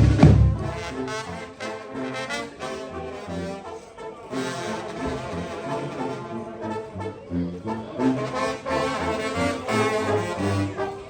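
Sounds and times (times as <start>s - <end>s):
loud drum beats: 0.0s - 0.9s
brass band melody: 0.0s - 11.0s.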